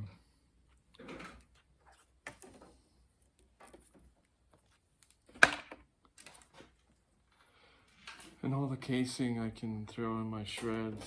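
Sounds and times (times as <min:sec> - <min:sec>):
wire clicks and rustles: 0:00.7 - 0:08.7.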